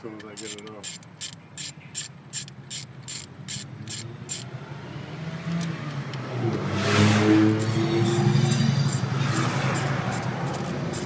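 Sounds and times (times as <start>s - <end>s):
ratchet wrench clicking: 0.0s - 4.5s, 7.4s - 11.0s.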